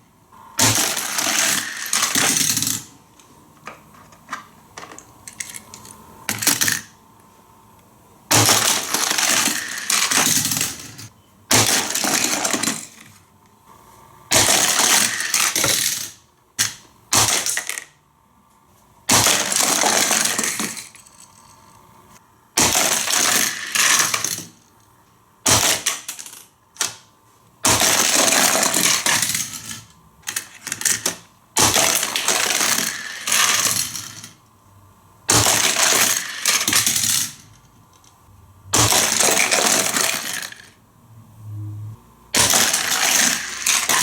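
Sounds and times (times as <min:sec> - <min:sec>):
plastic toy pieces clattering: 0:00.6 - 0:02.9, 0:03.9 - 0:06.9, 0:08.3 - 0:13.2, 0:14.4 - 0:18.0, 0:19.1 - 0:21.7, 0:22.6 - 0:24.6, 0:25.5 - 0:27.1, 0:27.7 - 0:34.4, 0:35.3 - 0:40.8, 0:42.4 - 0:44.0.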